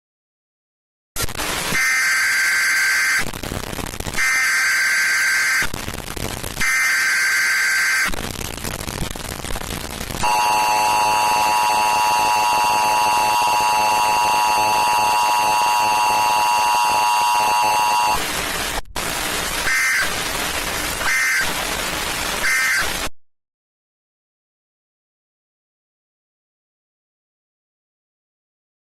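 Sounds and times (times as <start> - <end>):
screeching digital header tones: 1.5 - 3.3, 4.2 - 5.7, 6.6 - 8.2, 10.2 - 23.1
steady two-tone attention signal: 10.2 - 18.2.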